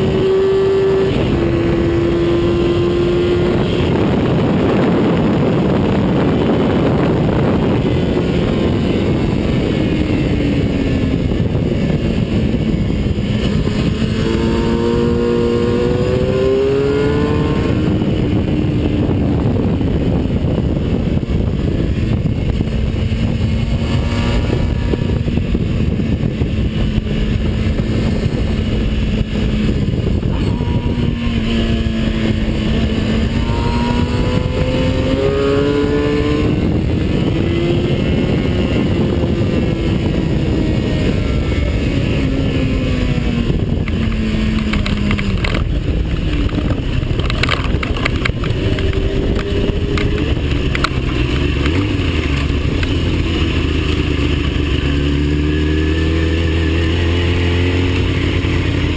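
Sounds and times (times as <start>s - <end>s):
wind rush: 0.0s - 58.9s
racing car engine shifting gears: 43.5s - 58.9s.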